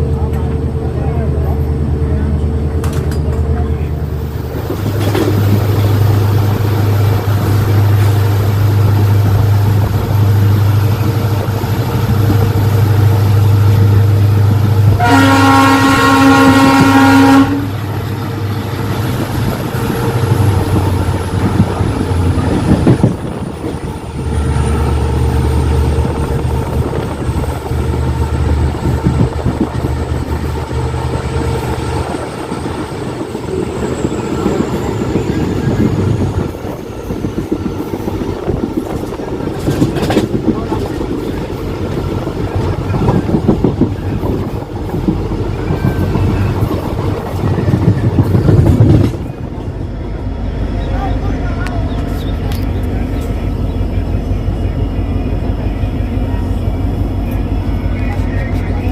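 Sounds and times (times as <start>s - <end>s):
locomotive engine humming: 0.0s - 58.9s
locomotive horn: 14.8s - 18.1s.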